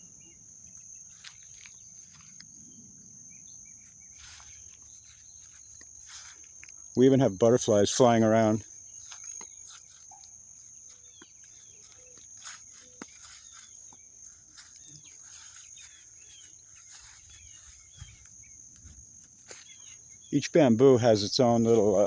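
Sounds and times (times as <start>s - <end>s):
crickets droning: 0.0s - 22.0s
bird chirps: 8.2s - 22.0s.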